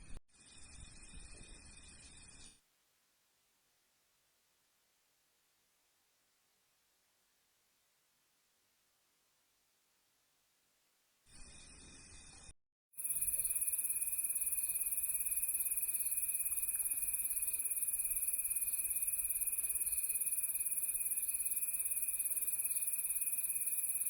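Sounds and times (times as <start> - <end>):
insects trilling: 13.0 - 24.0.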